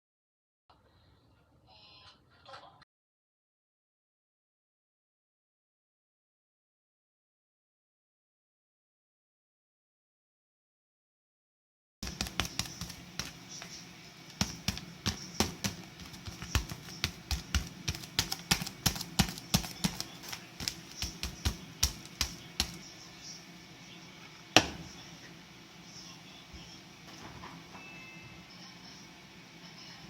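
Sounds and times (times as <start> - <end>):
hard objects tapping and clicking: 12.0 - 22.8.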